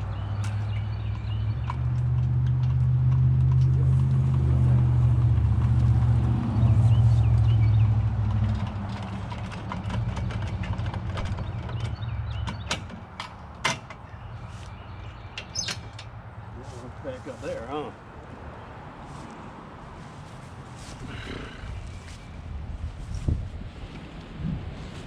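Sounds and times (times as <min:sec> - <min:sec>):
vehicle engine under load: 0:00.0 - 0:17.2
clanks and snaps: 0:00.3 - 0:04.4, 0:08.2 - 0:14.1.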